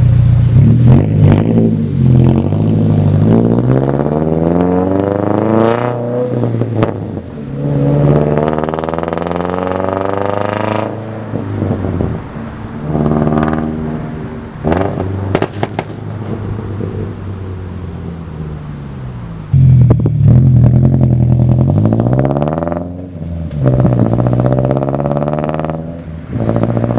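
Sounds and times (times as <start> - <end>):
car engine revving: 0.0 - 26.9
exhaust cracks: 14.6 - 17.0, 19.5 - 26.9.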